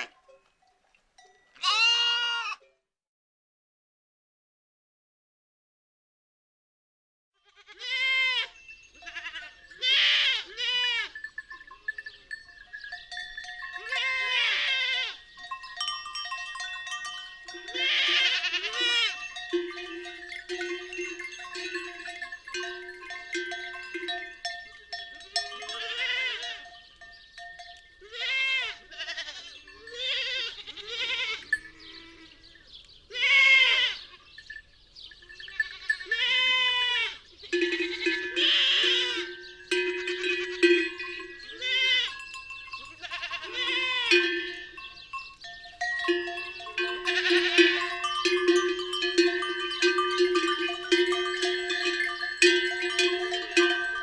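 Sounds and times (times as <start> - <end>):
livestock bleating: 0.0 - 0.2, 1.5 - 2.7, 7.4 - 11.3, 13.1 - 15.3, 17.5 - 21.4, 24.9 - 26.9, 28.0 - 34.4, 35.3 - 45.1, 45.8 - 54.0
animal bells ringing: 0.0 - 2.4, 7.6 - 54.0.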